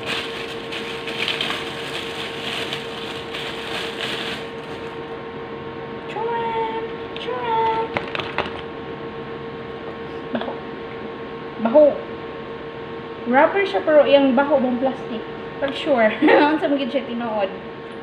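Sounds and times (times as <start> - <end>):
plastic packaging rustling: 0.0 - 5.0
electrical hum: 0.0 - 18.0.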